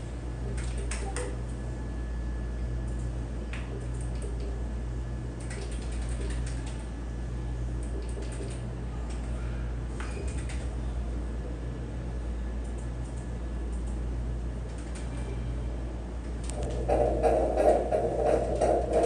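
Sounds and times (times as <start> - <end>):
keyboard clicks: 0.6 - 1.3, 5.4 - 6.8, 7.8 - 9.2
low hum: 16.4 - 19.0.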